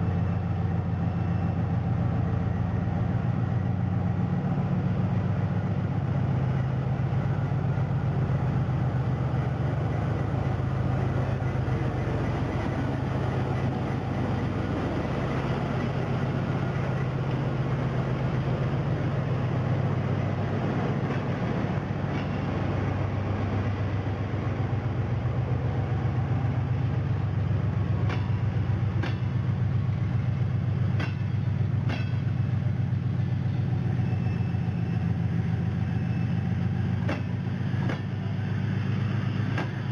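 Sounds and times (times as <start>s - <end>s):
diesel locomotive engine drone: 0.0s - 39.9s
wheels clicking over rail joints: 28.0s - 29.4s, 30.9s - 32.4s.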